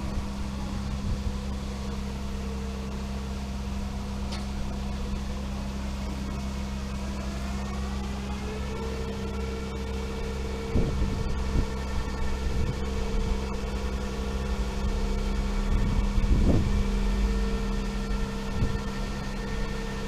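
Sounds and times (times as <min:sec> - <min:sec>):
wind buffeting microphone: 0:00.0 - 0:02.4, 0:10.6 - 0:19.1
truck engine running steadily: 0:00.0 - 0:20.0.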